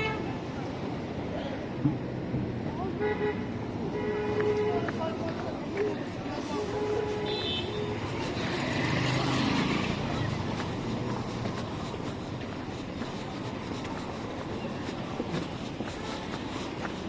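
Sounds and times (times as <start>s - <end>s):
street noise: 0.0s - 17.0s
vehicle passing close by: 7.7s - 12.0s.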